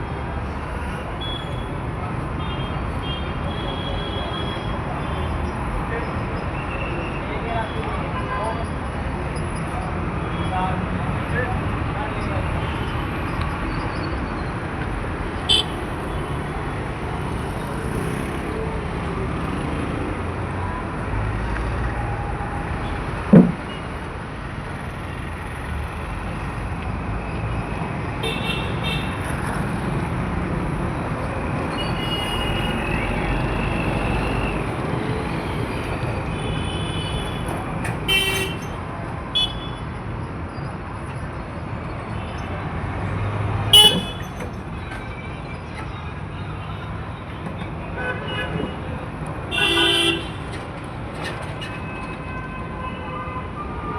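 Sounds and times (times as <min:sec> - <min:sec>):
road traffic rumble: 0:00.0 - 0:53.9
car horn honks: 0:15.5 - 0:15.8, 0:38.0 - 0:38.8, 0:43.7 - 0:44.3, 0:49.5 - 0:50.4.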